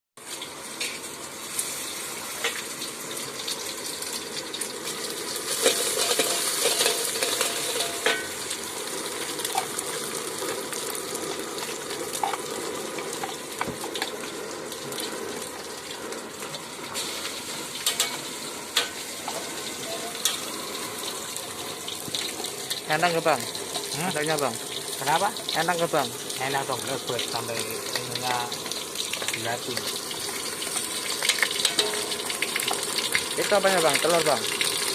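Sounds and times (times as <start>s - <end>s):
food sizzling in a pan: 0.2s - 34.9s
metal utensils clinking: 5.5s - 8.4s, 17.8s - 20.8s, 31.2s - 33.2s.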